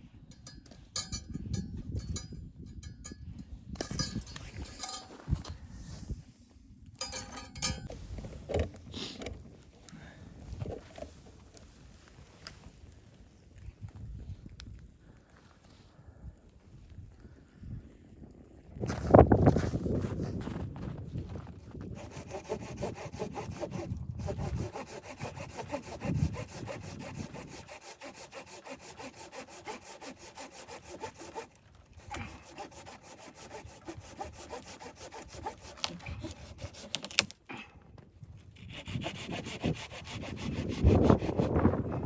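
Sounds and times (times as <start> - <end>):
hand saw cutting wood: 21.8 - 37.4, 38.5 - 41.8.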